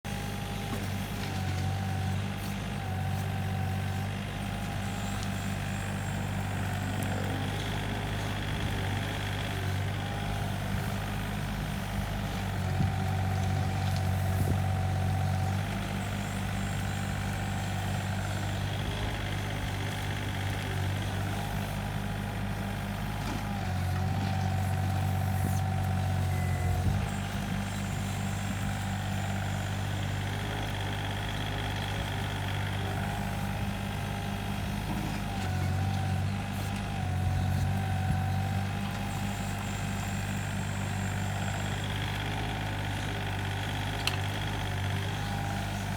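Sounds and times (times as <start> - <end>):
excavator diesel engine running: 0.1 - 45.9.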